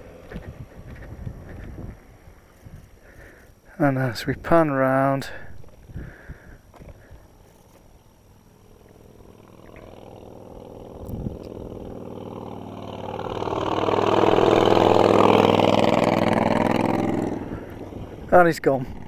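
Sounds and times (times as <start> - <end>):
motorcycle passing by: 0.0 - 2.7, 7.3 - 19.0.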